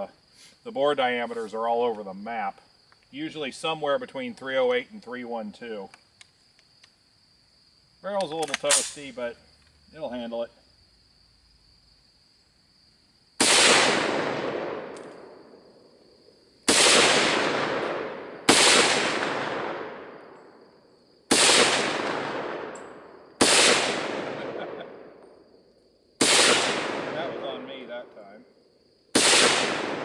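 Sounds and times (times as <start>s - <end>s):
rifle shots with echo: 13.4s - 15.6s, 16.7s - 20.4s, 21.3s - 25.1s, 26.2s - 28.0s, 29.1s - 30.0s.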